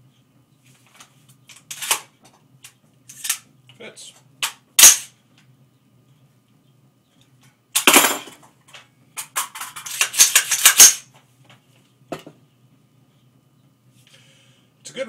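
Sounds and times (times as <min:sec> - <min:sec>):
rifle metal clacks and clicks: 0:09.2 - 0:11.0.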